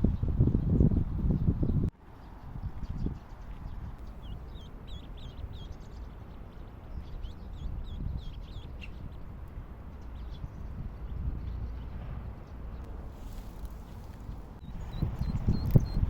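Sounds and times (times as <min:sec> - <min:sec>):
high-pitched bird peeps: 0:14.6 - 0:16.0.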